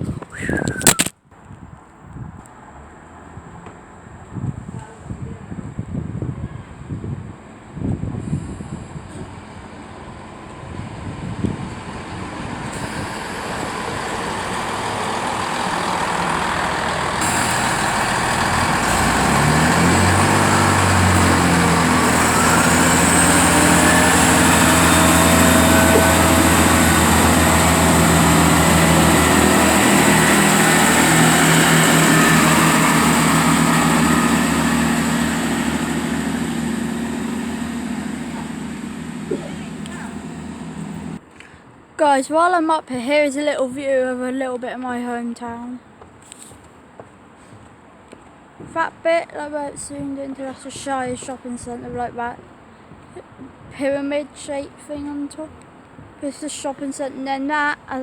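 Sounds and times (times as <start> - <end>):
diesel train passing: 9.3 - 41.2.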